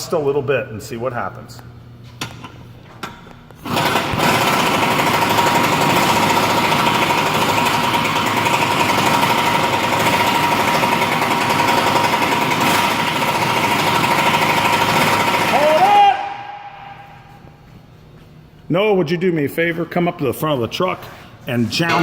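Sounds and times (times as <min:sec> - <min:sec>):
impact wrench hammering: 0:03.6 - 0:16.3.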